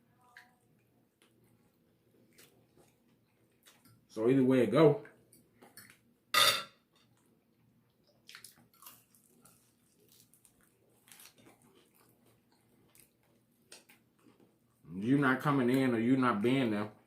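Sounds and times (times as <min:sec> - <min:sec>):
chewing: 0:00.2 - 0:04.1, 0:07.0 - 0:14.8.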